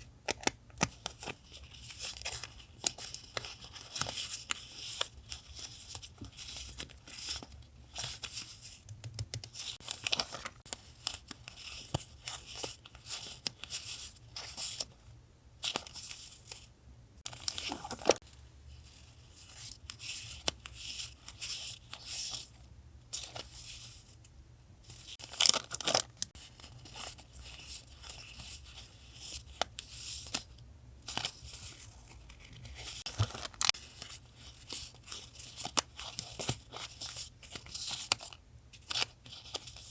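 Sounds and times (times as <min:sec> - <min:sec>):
paper rustling and crackling: 0:09.4 - 0:15.0, 0:17.3 - 0:18.2, 0:25.0 - 0:39.9.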